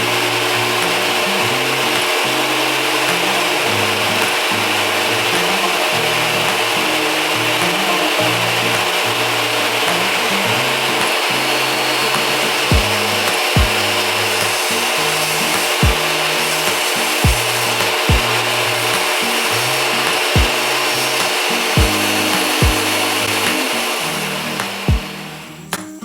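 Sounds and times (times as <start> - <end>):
bass line: 0.0 - 21.2, 21.8 - 25.8
table saw cutting plywood: 0.0 - 25.5
kick drum: 12.7 - 12.9, 13.6 - 13.8, 15.8 - 16.0, 17.2 - 17.5, 18.1 - 18.3, 20.4 - 20.6, 21.8 - 22.0, 22.6 - 22.8, 24.9 - 25.1.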